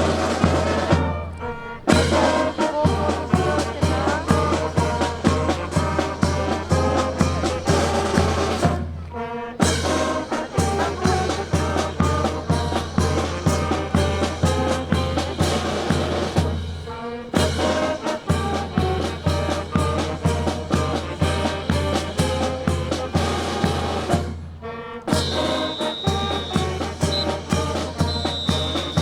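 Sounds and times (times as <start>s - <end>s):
brass band playing: 0.0s - 29.0s.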